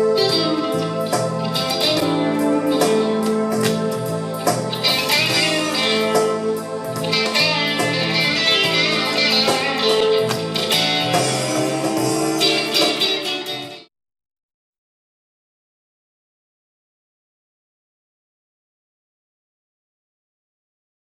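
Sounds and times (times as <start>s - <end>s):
electric guitar notes and chords: 0.0s - 13.9s.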